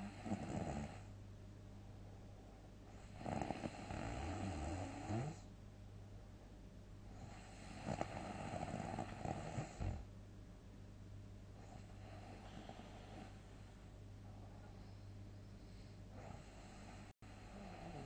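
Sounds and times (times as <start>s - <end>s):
person snoring loudly: 3.1s - 5.4s, 7.4s - 10.0s, 16.2s - 18.0s.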